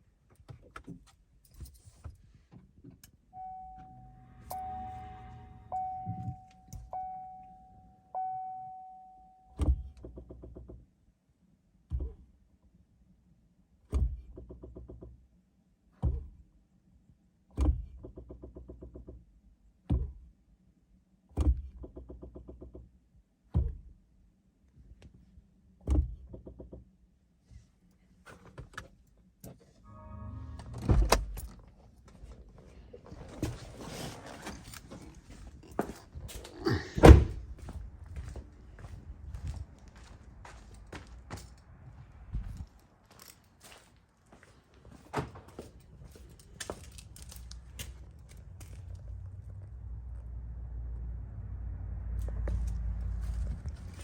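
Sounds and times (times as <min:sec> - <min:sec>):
short buzz: 0:03.8 - 0:06.6, 0:29.9 - 0:31.2.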